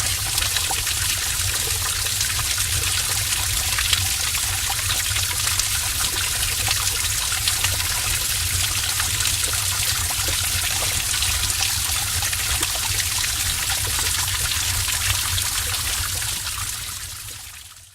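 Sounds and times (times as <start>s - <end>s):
water pouring and splashing: 0.0s - 17.9s.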